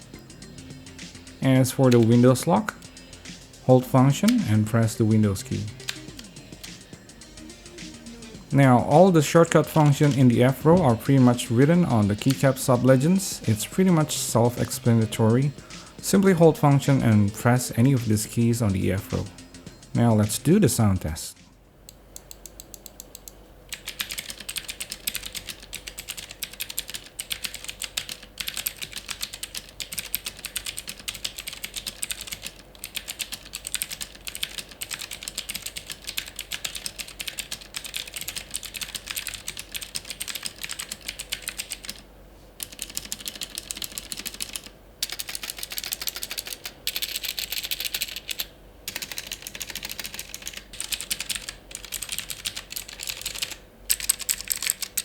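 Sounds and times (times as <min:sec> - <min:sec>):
mechanical keyboard typing: 0:01.4 - 0:02.8, 0:03.8 - 0:06.8, 0:08.6 - 0:15.3, 0:22.3 - 0:42.0, 0:42.6 - 0:55.0.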